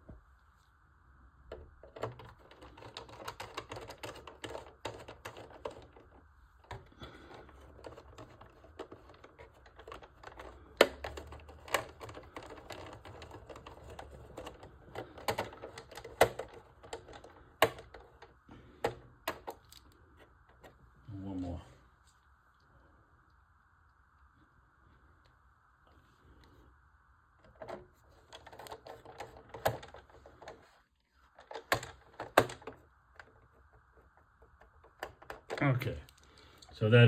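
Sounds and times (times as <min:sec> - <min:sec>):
screwdriver clicking and creaking: 0:01.5 - 0:20.8, 0:27.4 - 0:36.7.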